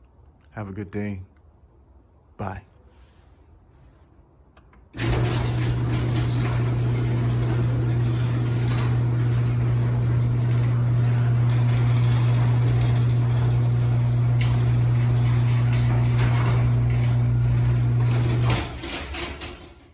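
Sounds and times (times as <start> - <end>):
garage door opener humming: 4.9 - 19.9.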